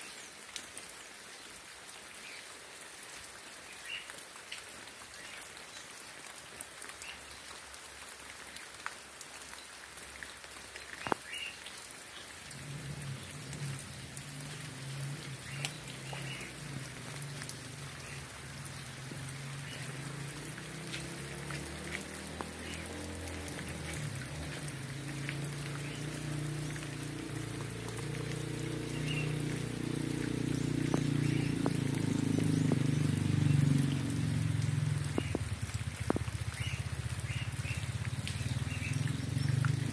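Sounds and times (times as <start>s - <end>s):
steady rain falling: 0.0s - 39.9s
drops ticking on a surface: 13.3s - 39.9s.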